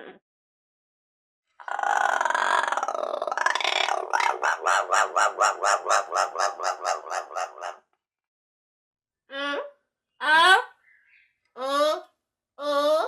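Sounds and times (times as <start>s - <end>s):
parrot squawking: 1.6s - 7.8s.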